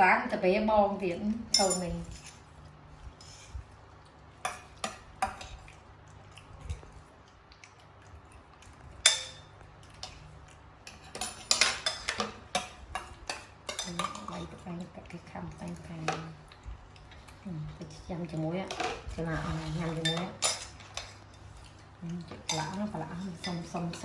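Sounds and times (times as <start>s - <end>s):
dishes and utensils clinking: 9.0s - 10.2s, 10.8s - 14.6s, 18.7s - 21.5s, 22.2s - 24.0s.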